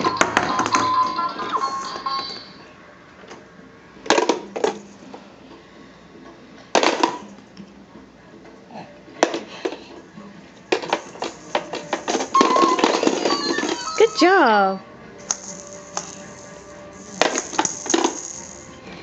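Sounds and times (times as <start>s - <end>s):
tinny electronic toy tune: 0.0s - 2.6s, 12.3s - 18.0s
plastic balls clattering: 4.1s - 5.0s, 10.7s - 14.2s, 15.2s - 19.0s.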